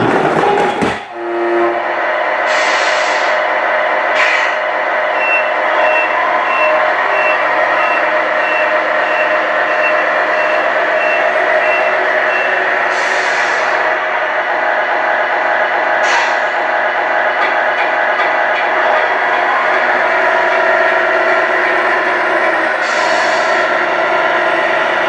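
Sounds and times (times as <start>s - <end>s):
air-brake hisses: 2.5s - 3.4s, 16.0s - 16.6s
reversing beeper: 5.1s - 12.7s.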